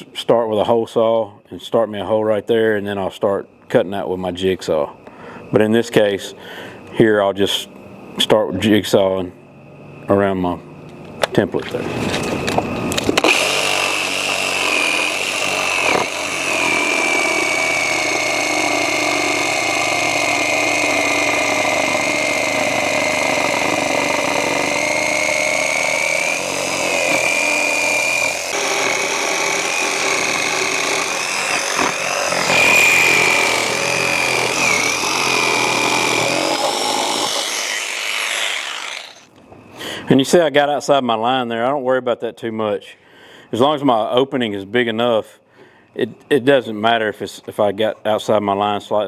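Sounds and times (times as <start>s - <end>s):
electric jigsaw cutting: 13.0s - 39.3s.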